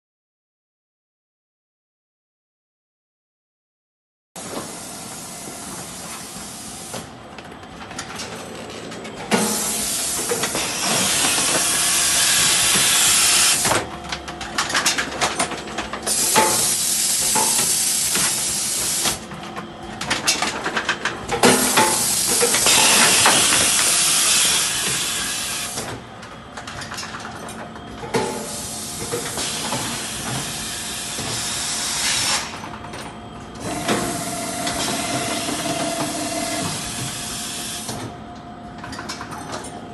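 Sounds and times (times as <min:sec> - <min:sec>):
machine hissing bursts: 0:09.4 - 0:13.8, 0:16.1 - 0:19.2, 0:21.6 - 0:25.8.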